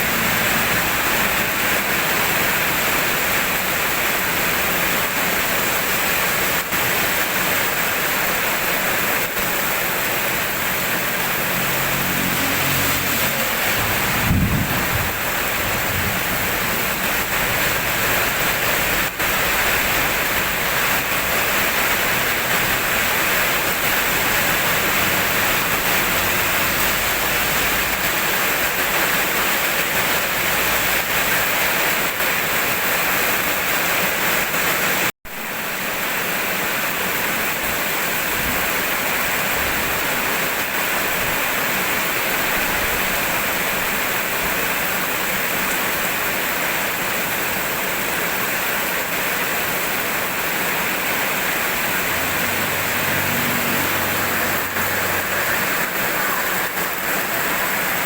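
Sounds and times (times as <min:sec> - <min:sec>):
steady rainfall: 0:00.0 - 0:58.0.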